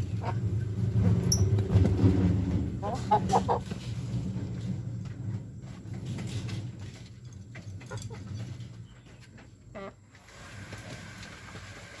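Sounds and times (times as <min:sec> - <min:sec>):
chickens calling: 0:00.0 - 0:04.1, 0:07.6 - 0:10.2
steady low hum: 0:00.0 - 0:09.1.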